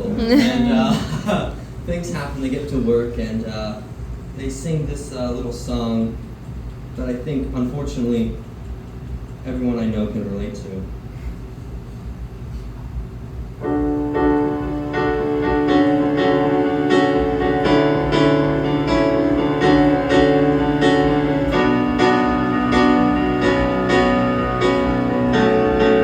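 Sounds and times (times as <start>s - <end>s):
piano chords: 13.6s - 26.0s.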